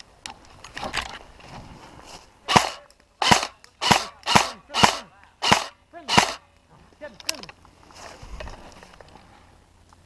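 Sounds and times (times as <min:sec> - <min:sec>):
faint clicks and rustles: 0:00.0 - 0:03.8, 0:06.2 - 0:10.0
airsoft gun shots: 0:02.5 - 0:06.4.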